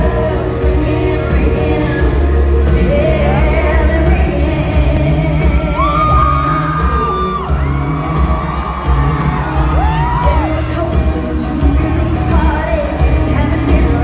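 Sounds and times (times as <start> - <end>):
live country-pop band music: 0.0 - 14.0
audience members whooping: 5.5 - 11.0.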